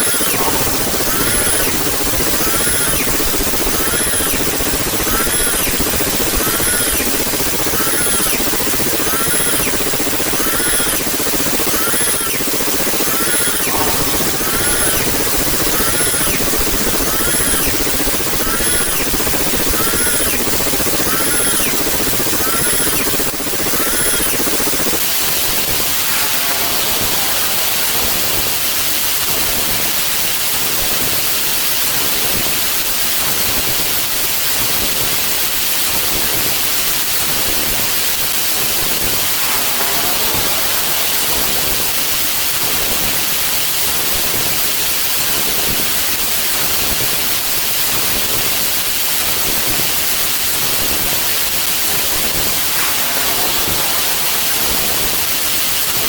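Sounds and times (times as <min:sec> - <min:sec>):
static hiss: 0:00.0 - 0:33.2, 0:37.2 - 0:44.0, 0:50.0 - 0:56.0
faint wavering tones: 0:52.2 - 0:56.0.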